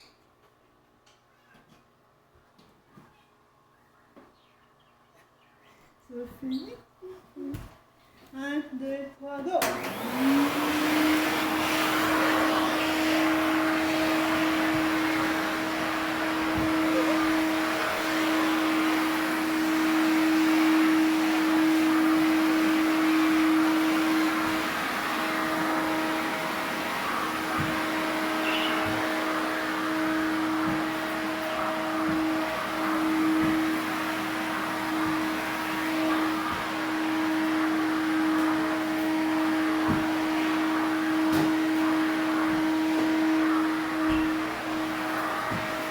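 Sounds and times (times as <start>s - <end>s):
vacuum cleaner running: 9.6s - 45.9s.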